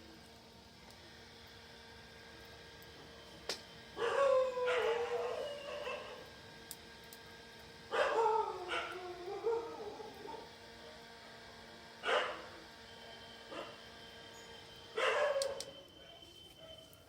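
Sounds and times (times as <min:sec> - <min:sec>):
dog barking: 0:04.0 - 0:06.2, 0:07.9 - 0:10.5, 0:12.0 - 0:12.5, 0:13.5 - 0:13.8, 0:15.0 - 0:16.9
dog whining: 0:04.0 - 0:06.2.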